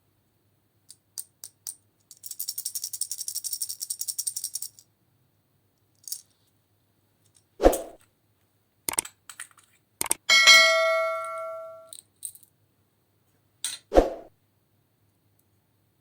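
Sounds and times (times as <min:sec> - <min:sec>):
small objects clicking: 0:00.9 - 0:04.8, 0:08.9 - 0:10.2
jingly rattle: 0:10.3 - 0:11.9.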